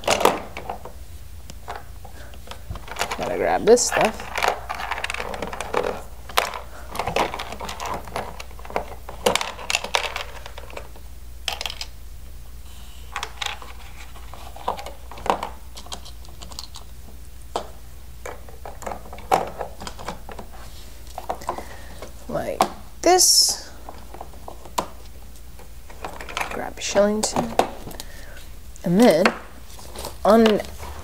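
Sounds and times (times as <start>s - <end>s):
plastic toy pieces rattling: 2.5s - 10.9s, 11.5s - 11.9s, 13.1s - 16.9s, 25.9s - 28.0s.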